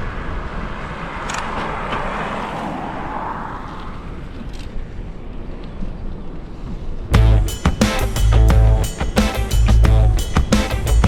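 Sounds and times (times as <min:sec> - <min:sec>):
guitar: 0:07.1 - 0:11.0
bass line: 0:07.2 - 0:11.0
steady drum beat: 0:07.2 - 0:11.0.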